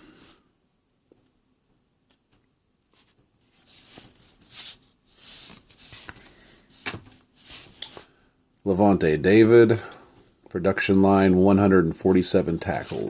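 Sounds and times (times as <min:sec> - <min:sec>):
cards sliding and swishing: 0:02.9 - 0:08.1.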